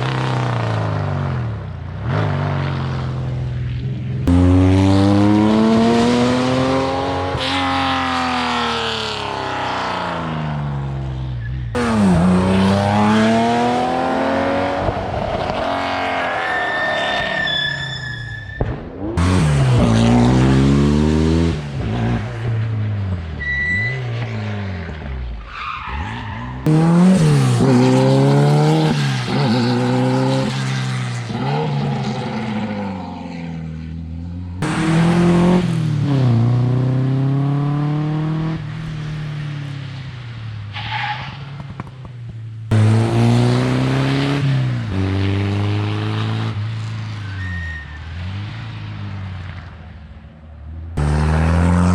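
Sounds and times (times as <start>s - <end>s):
rally car engines revving: 0.0s - 49.8s, 50.6s - 51.9s.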